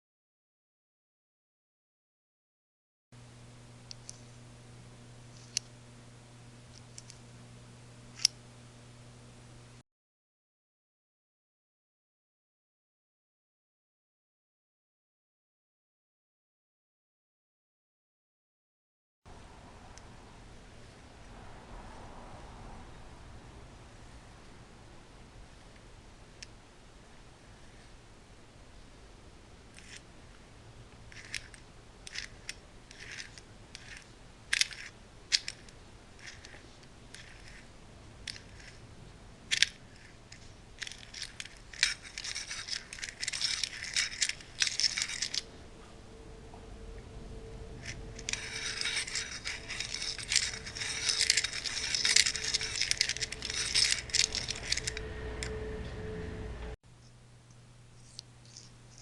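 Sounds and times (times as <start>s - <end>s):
faint steady hum: 3.2s - 9.8s, 19.3s - 59.0s
metal tools clinking and scraping: 39.5s - 45.5s, 47.8s - 55.6s.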